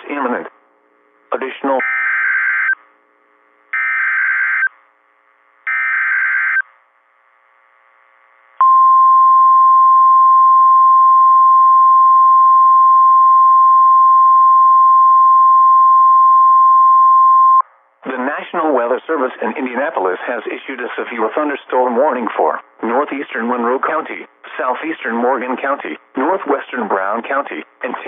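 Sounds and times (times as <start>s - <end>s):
steady warning alarm tone: 1.8s - 2.8s, 3.7s - 4.7s, 5.7s - 6.6s.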